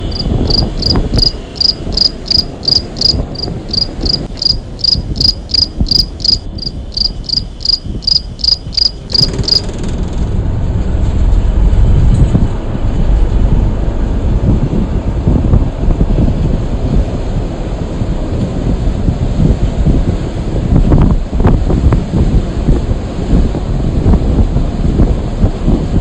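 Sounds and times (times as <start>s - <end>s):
cricket chirping: 0.0s - 9.7s
low rumble: 0.0s - 26.0s.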